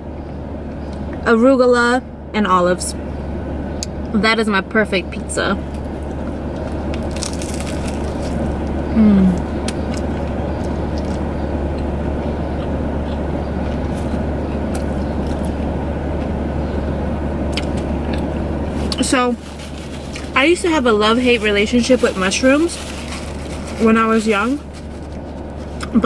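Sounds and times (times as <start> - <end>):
car cabin hum: 0.0 - 26.0
crunchy chewing: 5.6 - 26.0
person humming: 8.9 - 9.5.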